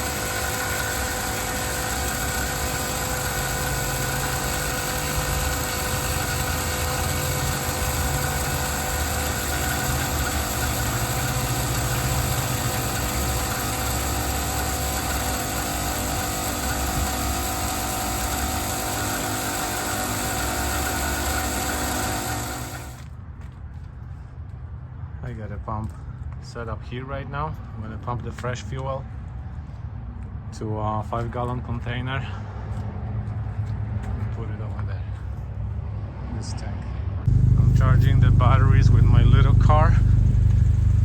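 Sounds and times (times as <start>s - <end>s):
engine idling: 0.0s - 23.0s, 37.3s - 41.0s.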